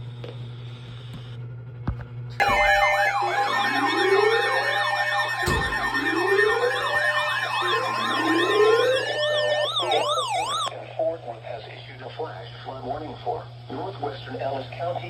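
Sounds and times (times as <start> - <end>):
electronic sirens wailing: 2.4 - 10.7.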